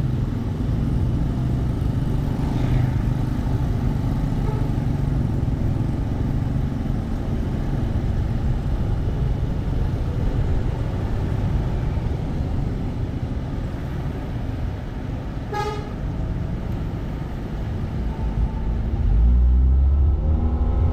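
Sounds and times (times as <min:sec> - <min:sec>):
vehicle and road rumble: 0:00.0 - 0:20.9
short horn toot: 0:15.5 - 0:16.0.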